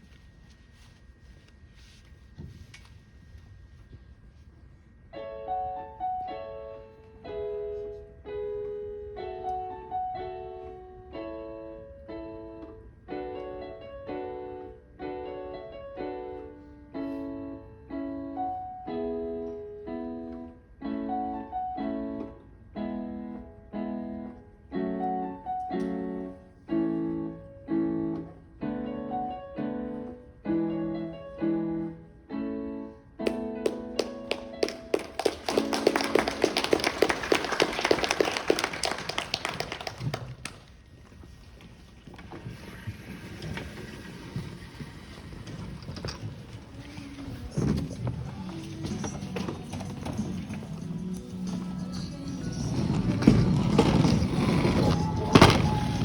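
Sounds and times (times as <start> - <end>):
piano chords: 5.0 - 40.4, 46.4 - 56.0.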